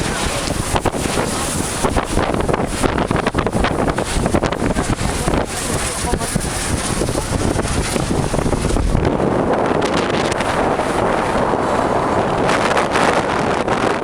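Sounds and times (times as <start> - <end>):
strong wind buffeting microphone: 0.0 - 14.0.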